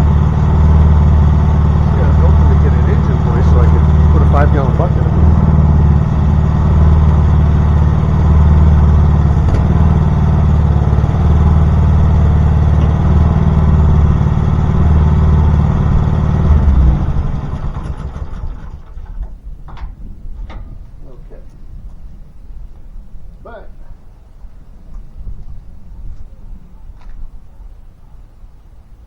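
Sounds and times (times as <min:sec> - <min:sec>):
small gasoline engine running: 0:00.0 - 0:19.2.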